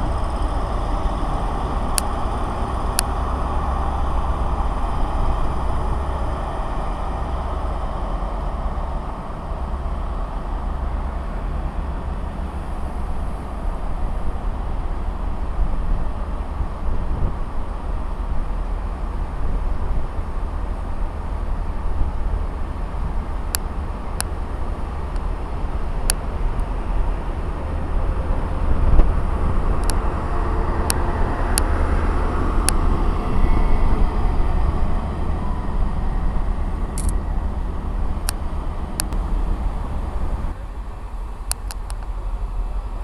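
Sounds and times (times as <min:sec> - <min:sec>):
train rumbling past: 0:00.0 - 0:43.0.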